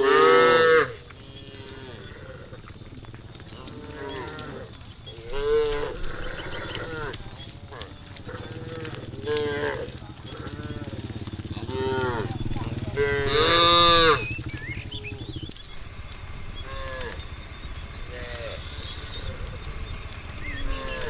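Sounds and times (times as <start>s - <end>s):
cattle mooing: 0.0s - 15.4s
steady low hum: 8.2s - 16.6s.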